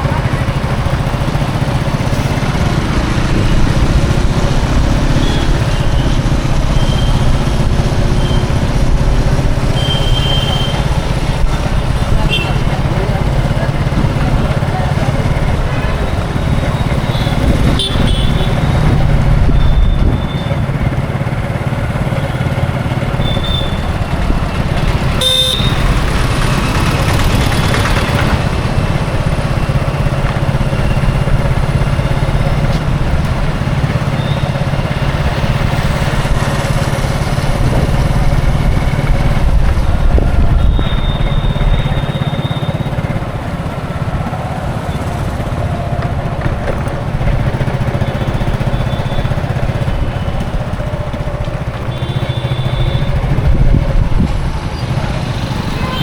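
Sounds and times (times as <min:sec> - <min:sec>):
road traffic engines: 0:00.0 - 0:56.0
vehicle horn toots: 0:05.2 - 0:06.2, 0:06.8 - 0:07.3, 0:09.7 - 0:11.0, 0:12.2 - 0:12.8, 0:15.6 - 0:18.9, 0:23.1 - 0:24.1, 0:24.8 - 0:26.1, 0:51.8 - 0:53.4, 0:55.7 - 0:56.0.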